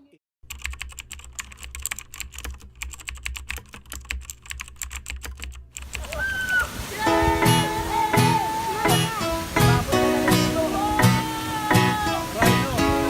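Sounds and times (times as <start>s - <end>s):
rapid irregular clicking: 0.4s - 6.1s.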